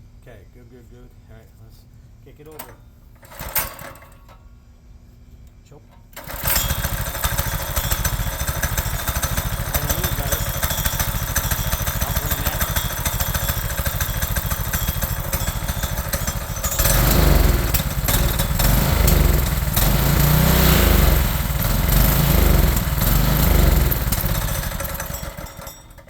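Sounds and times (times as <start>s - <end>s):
small engine revving: 6.2s - 25.9s.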